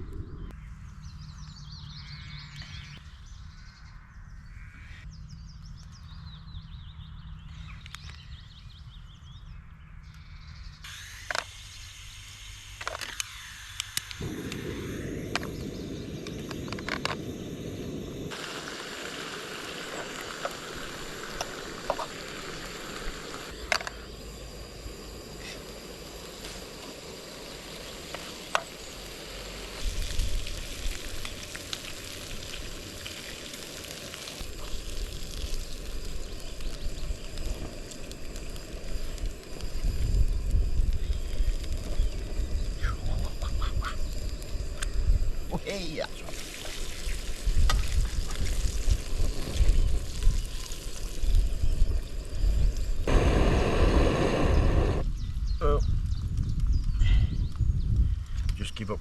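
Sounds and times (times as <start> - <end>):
low rumble: 0.0 - 1.0, 47.4 - 58.4
bacon sizzling in a pan: 18.2 - 24.2, 25.0 - 55.0.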